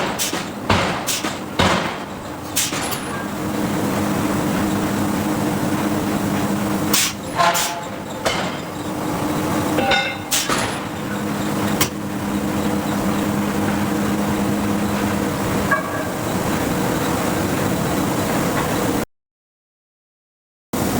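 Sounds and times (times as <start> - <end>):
machinery humming: 0.0 - 19.0
metallic hammer strikes: 9.8 - 10.8.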